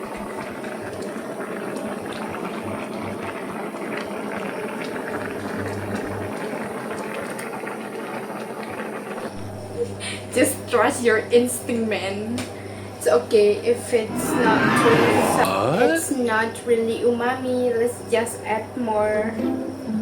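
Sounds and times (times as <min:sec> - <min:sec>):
food bubbling on stove: 0:00.0 - 0:09.7.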